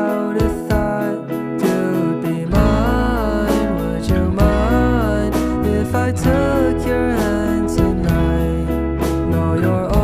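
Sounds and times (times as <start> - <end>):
strummed acoustic guitar: 0.0 - 10.0
deep bass: 2.5 - 10.0.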